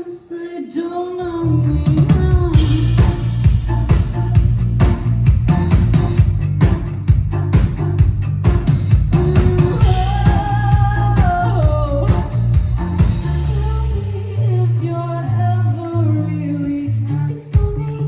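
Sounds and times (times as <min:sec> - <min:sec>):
person singing: 0:00.0 - 0:18.0
bass: 0:01.2 - 0:18.0
drum beat: 0:01.9 - 0:13.9.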